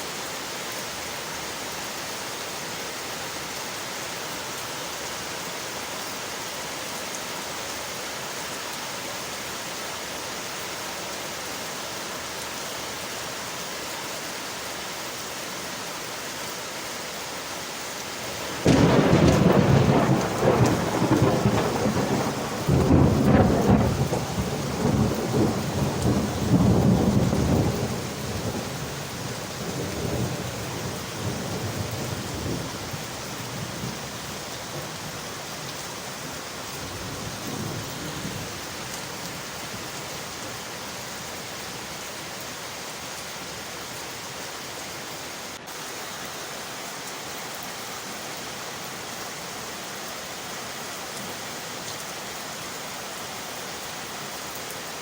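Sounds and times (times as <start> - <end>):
rain on window glass: 18.2 - 43.4
thunderclap rumbling: 18.4 - 33.0.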